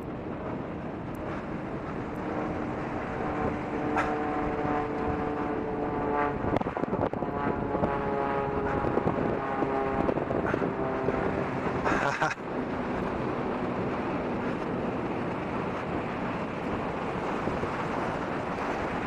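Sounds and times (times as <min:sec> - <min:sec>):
motor drone: 0:00.0 - 0:19.0
steady rushing noise: 0:00.0 - 0:19.0.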